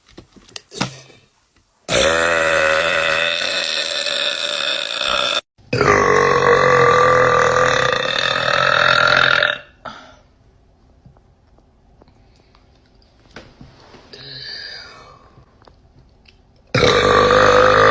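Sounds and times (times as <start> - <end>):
woman burping: 16.8 - 17.9.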